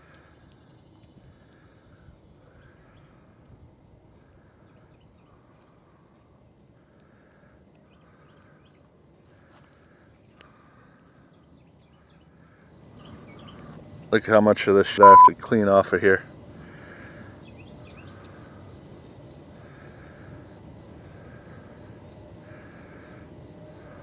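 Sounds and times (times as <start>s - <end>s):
buzzy insect call: 0.0s - 24.0s
insects droning: 0.0s - 24.0s.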